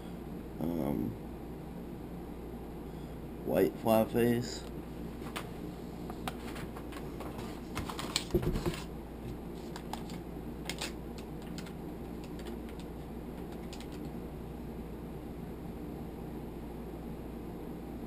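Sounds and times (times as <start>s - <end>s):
steady low hum: 0.0s - 18.0s
packaging being handled: 6.3s - 14.1s.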